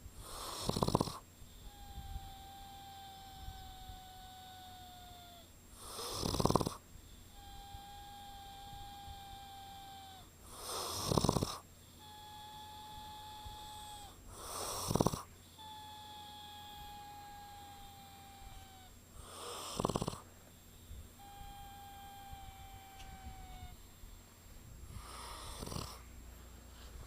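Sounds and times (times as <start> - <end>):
loud rough snores: 0.2 - 20.3, 24.9 - 26.1
high whistle while breathing: 7.0 - 10.3, 11.9 - 14.2, 15.5 - 18.8, 21.2 - 23.8.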